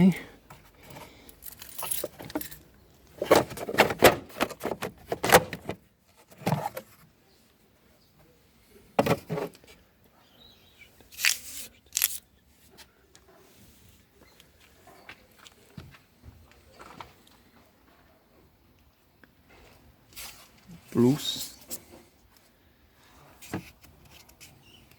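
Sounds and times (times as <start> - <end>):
metal tools clinking and scraping: 0.8 - 3.8.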